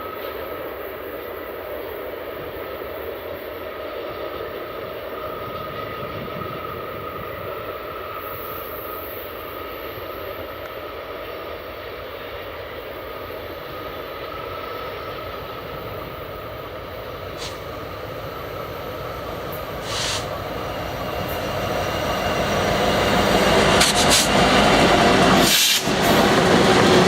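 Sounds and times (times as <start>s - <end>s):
train wheels rumbling on rail: 0.0s - 27.0s.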